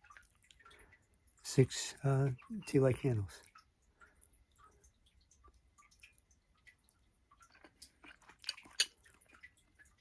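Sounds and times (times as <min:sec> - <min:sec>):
person chewing food: 0:00.0 - 0:00.7, 0:04.1 - 0:10.0.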